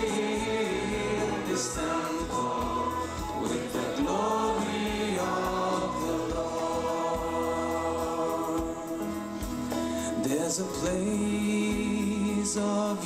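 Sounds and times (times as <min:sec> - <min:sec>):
choir singing: 0:00.0 - 0:09.4
instrumental backing with beat: 0:00.0 - 0:13.0.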